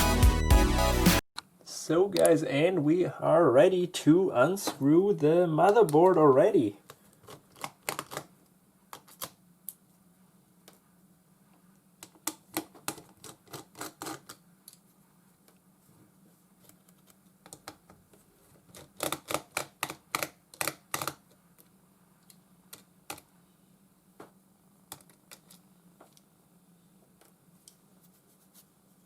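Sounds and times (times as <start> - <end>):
faint steady hum: 1.4 - 13.6, 20.0 - 29.0.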